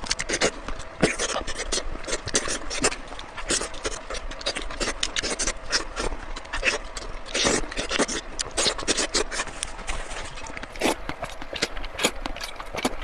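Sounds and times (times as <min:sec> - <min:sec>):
chewing with wet mouth clicks: 0:00.0 - 0:13.0.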